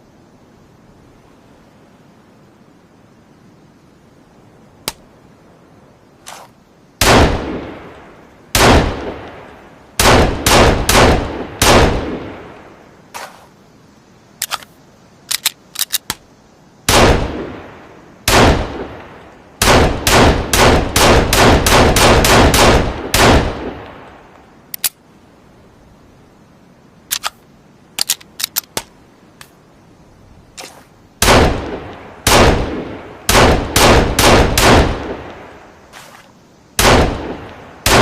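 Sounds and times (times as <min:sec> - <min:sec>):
pistol shots echoing: 0:08.6 - 0:09.2, 0:10.0 - 0:12.4, 0:19.6 - 0:23.9, 0:31.2 - 0:35.4, 0:36.8 - 0:38.0
light clicks: 0:14.4 - 0:16.3, 0:24.3 - 0:25.0, 0:27.1 - 0:29.6.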